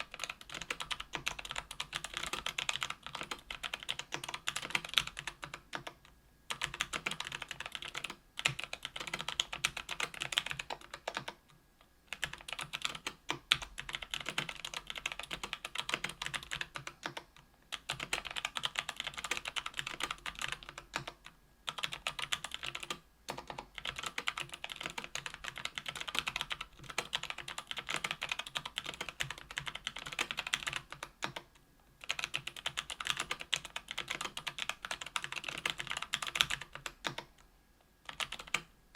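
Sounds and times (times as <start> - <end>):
mechanical keyboard typing: 0.0 - 11.5, 12.1 - 37.4, 38.1 - 38.7.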